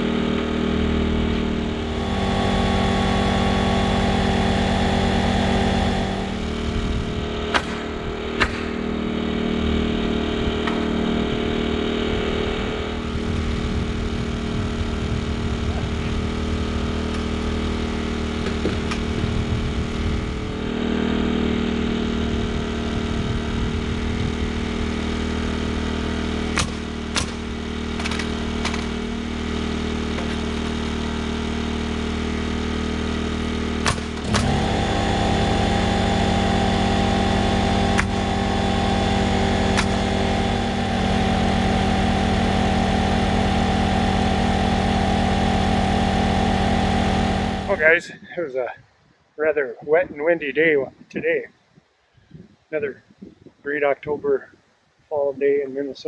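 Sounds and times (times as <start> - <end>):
engine running: 0.0 - 48.2
sharp clicks or knocks: 7.5 - 8.8, 26.5 - 29.0, 33.8 - 35.3, 37.7 - 40.9.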